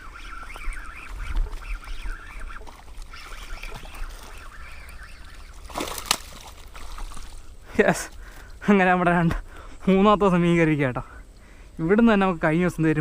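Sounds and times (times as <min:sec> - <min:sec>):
birds making duck-like calls: 0:00.0 - 0:07.6.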